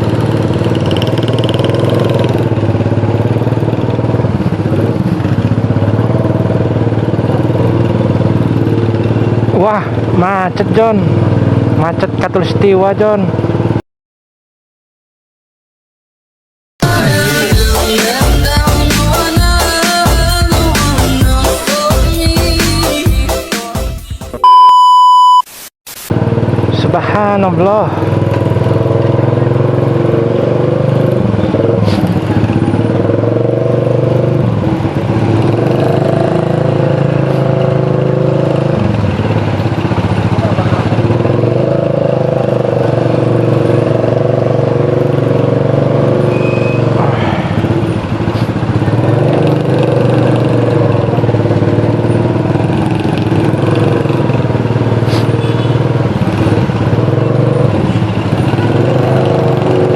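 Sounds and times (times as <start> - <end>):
motorcycle engine running: 0.0 - 13.8, 26.1 - 59.9.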